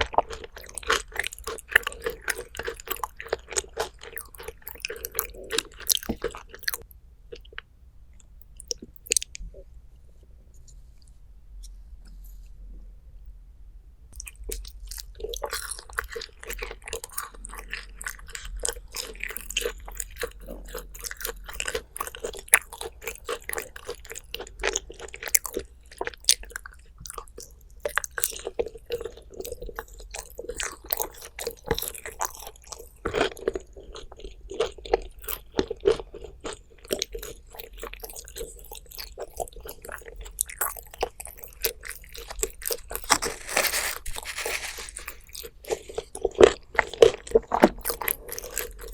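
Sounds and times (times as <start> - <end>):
chewing and crunching food: 0.0 - 10.2, 14.1 - 48.9.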